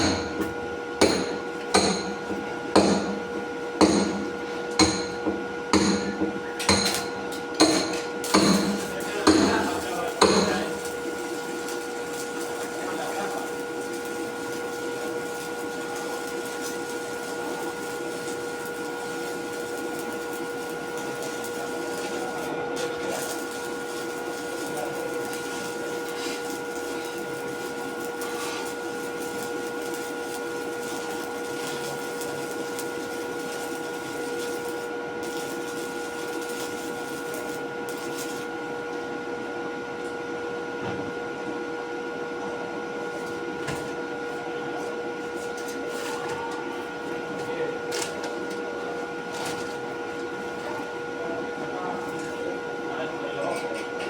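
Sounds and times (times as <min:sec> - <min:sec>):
steady machine drone: 0:00.0 - 0:39.3.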